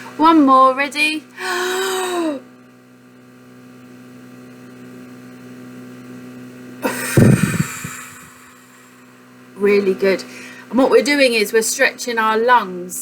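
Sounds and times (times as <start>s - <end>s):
electrical mains hum: 0.0s - 13.0s
loud rushing exhale: 6.9s - 9.2s.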